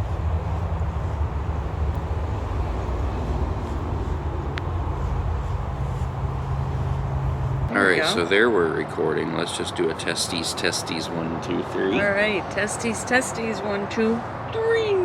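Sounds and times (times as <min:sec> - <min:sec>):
low mechanical hum: 0:00.0 - 0:08.4.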